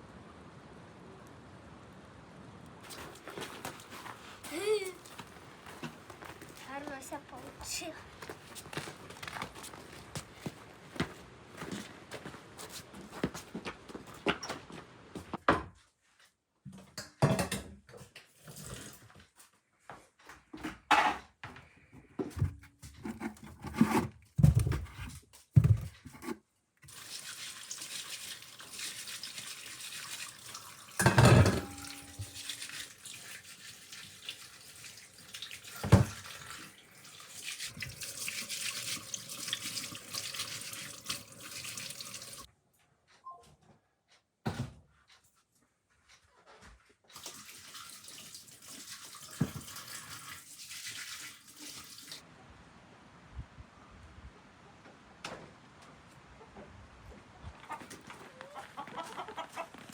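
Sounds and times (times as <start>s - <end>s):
water running: 2.8s - 14.0s, 26.8s - 42.5s, 47.1s - 52.2s
knocks and clatter of handling: 31.0s - 32.1s.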